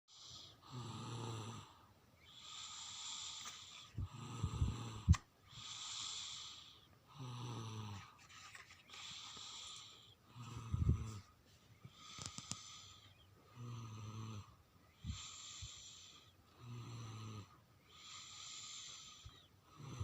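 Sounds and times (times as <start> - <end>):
person snoring: 0.1 - 8.2, 12.0 - 20.0.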